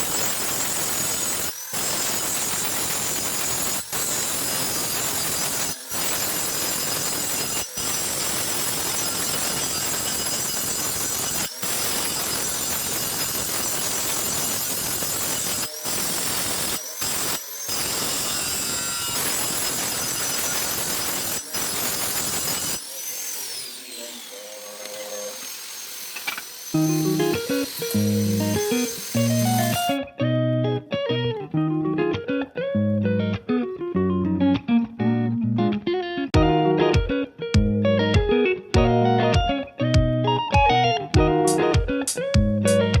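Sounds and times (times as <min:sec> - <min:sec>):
angle grinder grinding steel: 0:00.0 - 0:30.0.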